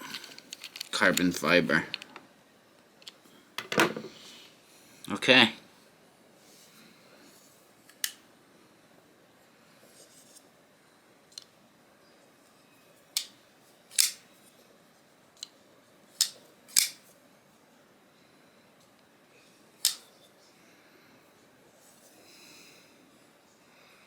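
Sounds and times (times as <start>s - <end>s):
knife blade clicking open and shut: 13.9s - 14.2s, 16.2s - 17.0s, 19.8s - 20.1s.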